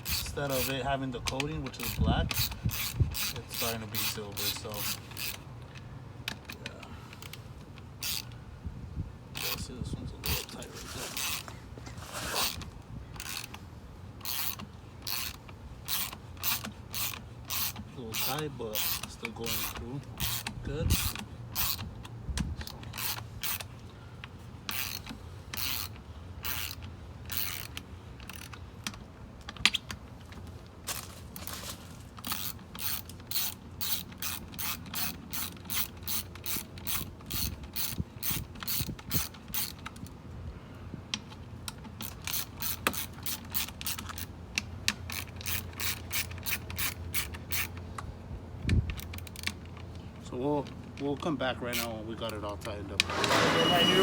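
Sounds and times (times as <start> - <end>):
ratchet wrench clicking: 0.0 - 6.6, 8.0 - 8.4, 9.3 - 9.6, 13.2 - 13.6, 14.2 - 23.8, 24.7 - 29.0, 32.2 - 40.1, 41.2 - 47.8, 51.7 - 51.9.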